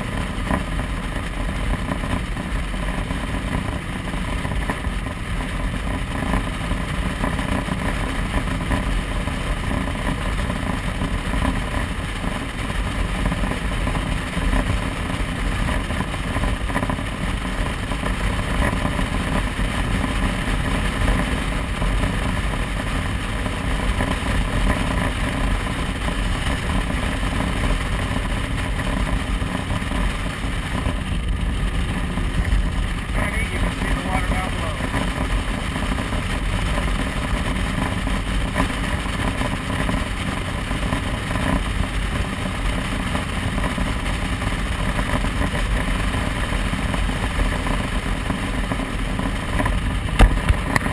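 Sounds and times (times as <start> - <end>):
motorcycle engine running: 0.0 - 50.9
rushing noise: 17.3 - 50.9.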